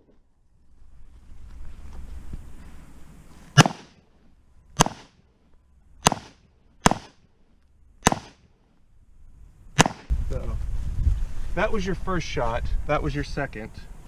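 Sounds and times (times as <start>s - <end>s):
handgun shots: 3.6s - 4.0s, 4.8s - 5.2s, 6.0s - 7.2s, 8.0s - 8.4s, 9.8s - 10.1s.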